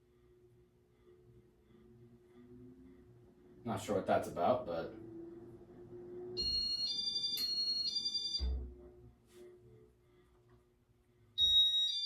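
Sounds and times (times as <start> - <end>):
faint fan hum: 0.0 - 11.4
two-tone electronic chirp: 11.4 - 12.0.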